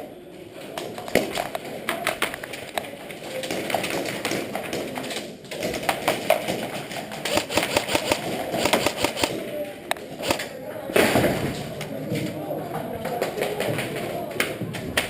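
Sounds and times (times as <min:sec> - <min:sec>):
airsoft guns firing: 0:05.9 - 0:09.6, 0:10.2 - 0:10.5.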